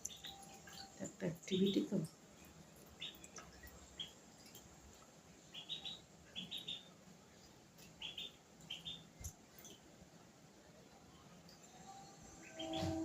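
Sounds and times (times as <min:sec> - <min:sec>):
ducklings peeping: 0:00.0 - 0:02.0, 0:02.9 - 0:04.2, 0:05.5 - 0:06.9, 0:07.9 - 0:09.2, 0:12.4 - 0:13.0.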